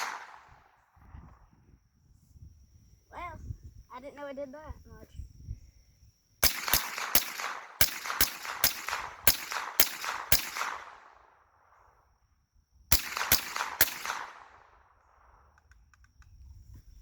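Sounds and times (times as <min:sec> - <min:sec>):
rifle shots with echo: 0:00.0 - 0:00.8, 0:06.4 - 0:11.9, 0:12.9 - 0:15.4.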